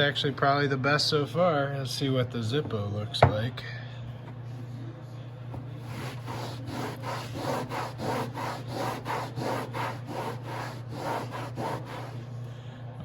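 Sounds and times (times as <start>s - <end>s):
hand scrubbing on boat deck: 5.8s - 12.2s.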